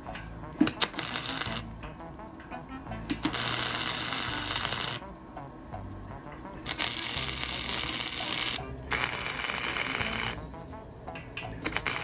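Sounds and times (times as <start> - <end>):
welding arc crackle and spatter: 0.4 - 2.4, 3.1 - 5.2, 6.0 - 10.8, 11.6 - 12.0.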